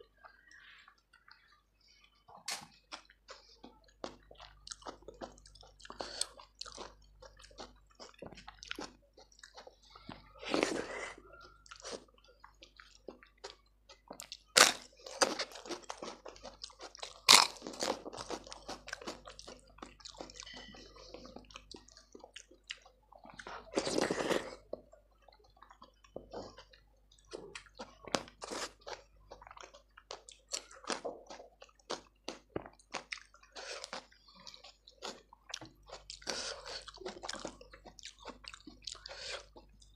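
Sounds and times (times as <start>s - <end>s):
chewing with wet crunches: 0.0s - 39.9s.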